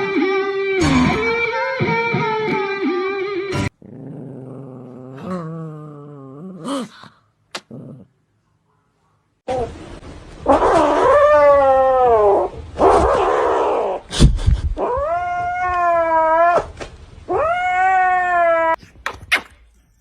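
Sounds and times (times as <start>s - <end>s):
cat yowling: 17.3s - 18.8s.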